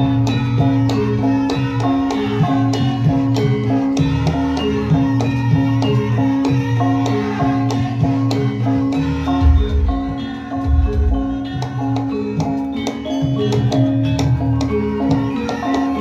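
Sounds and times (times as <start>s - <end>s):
mallet-struck metal notes: 0.0s - 16.0s
heavy drum beats: 9.3s - 11.6s.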